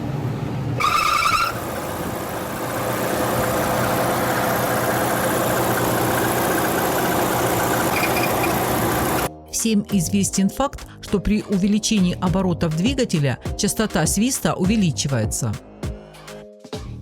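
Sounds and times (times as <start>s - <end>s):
car engine running: 0.0s - 9.3s
drive belt squealing: 0.8s - 9.3s.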